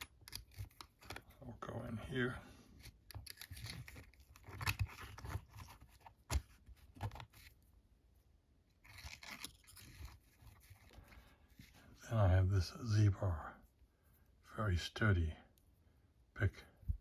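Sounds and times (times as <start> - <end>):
metal tools clicking and scraping: 0.0 - 1.2, 3.1 - 5.3.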